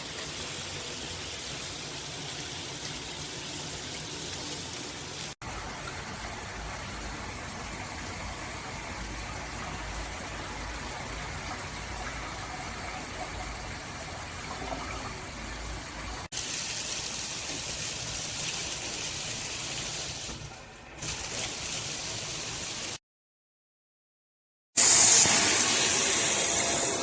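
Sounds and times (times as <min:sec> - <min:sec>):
shower head spraying water: 0:16.3 - 0:23.0.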